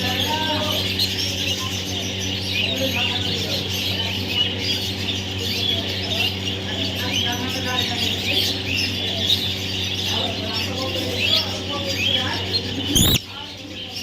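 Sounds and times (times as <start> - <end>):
steady low hum: 8.5 - 13.2
baby parrot chirping: 12.2 - 13.2.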